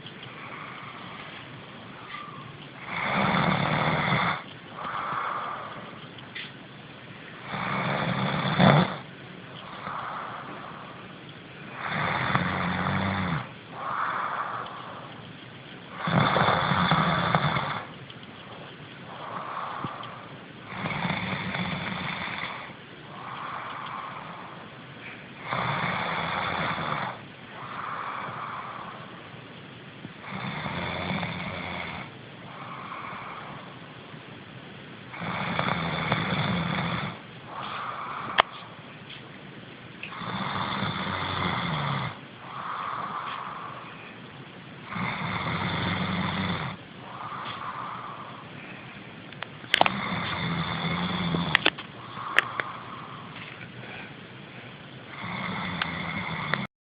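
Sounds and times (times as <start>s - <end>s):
soft breathing: 0.0s - 7.8s, 8.6s - 30.3s, 32.0s - 35.2s, 37.1s - 39.4s, 42.1s - 56.7s
person snoring: 2.2s - 6.0s, 7.4s - 11.0s, 11.7s - 15.2s, 15.9s - 17.9s, 19.1s - 24.7s, 25.4s - 29.2s, 35.1s - 38.8s, 40.0s - 44.1s, 44.8s - 49.1s, 49.7s - 54.2s, 55.1s - 56.7s
soft breath out: 37.5s - 39.2s, 42.4s - 44.3s, 47.0s - 49.9s, 51.5s - 54.9s.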